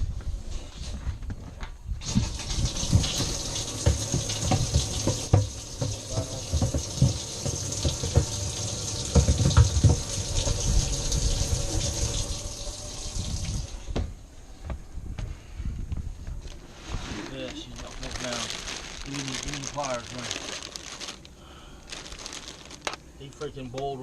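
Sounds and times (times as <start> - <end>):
pump gushing water: 2.0 - 13.8
low knocks and bumps: 9.0 - 10.8.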